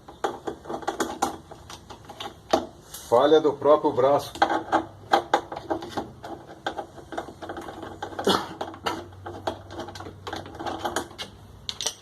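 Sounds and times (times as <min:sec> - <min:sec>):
mechanism parts clicking and rattling: 0:04.2 - 0:12.0.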